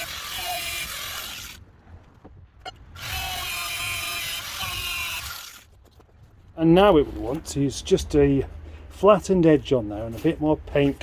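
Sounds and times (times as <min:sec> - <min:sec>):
angle grinder grinding metal: 0:00.0 - 0:01.6, 0:03.0 - 0:05.7.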